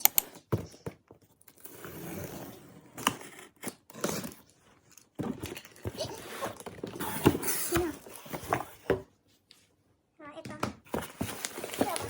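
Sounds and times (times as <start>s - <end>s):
packaging scraping and rustling: 1.5s - 9.0s, 10.9s - 12.0s
packaging clicks and knocks: 10.9s - 12.0s.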